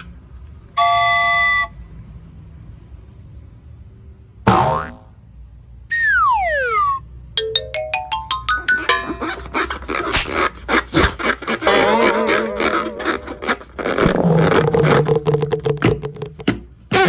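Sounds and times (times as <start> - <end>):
rising notes: 7.4 - 9.7, 11.7 - 13.6.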